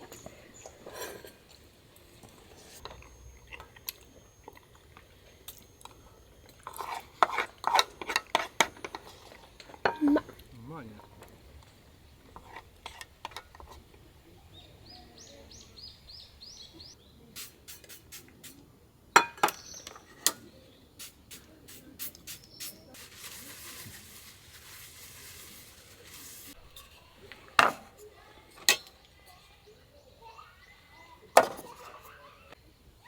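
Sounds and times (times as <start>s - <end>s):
tableware clinking: 0.1s - 1.7s, 2.8s - 13.9s, 19.2s - 20.2s
bird chirping: 13.8s - 17.3s, 19.4s - 21.4s, 22.3s - 23.0s
steady hiss: 17.4s - 18.6s, 21.0s - 26.8s.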